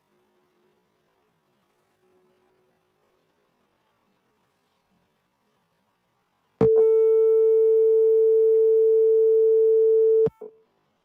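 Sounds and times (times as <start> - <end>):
buzzer steady tone: 6.6 - 10.5.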